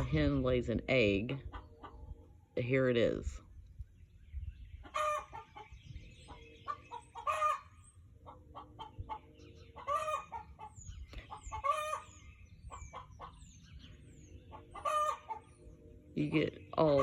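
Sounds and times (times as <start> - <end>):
hen clucking and squawking: 1.3 - 2.5, 4.6 - 17.0.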